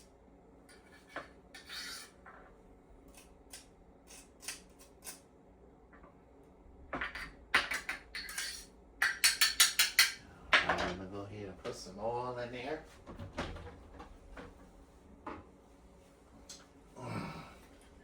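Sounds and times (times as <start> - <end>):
kitchen utensils clicking and scraping: 0.7 - 2.2, 7.2 - 11.0.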